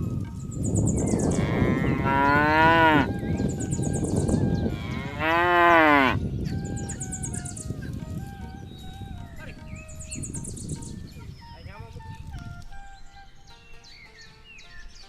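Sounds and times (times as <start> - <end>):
cow mooing: 1.3 - 3.2, 4.7 - 6.2.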